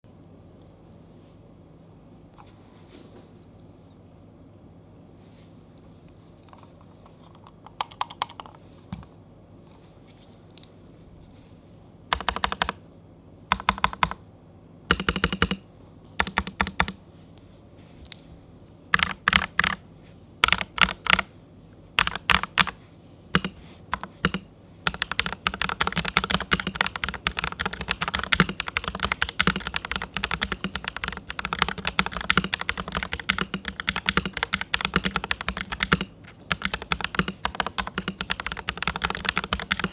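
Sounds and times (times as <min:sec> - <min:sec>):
mechanical keyboard typing: 0:07.7 - 0:08.6, 0:12.1 - 0:12.8, 0:13.5 - 0:14.2, 0:14.9 - 0:15.6, 0:16.2 - 0:17.0, 0:18.9 - 0:19.8, 0:20.4 - 0:21.3, 0:22.0 - 0:39.9.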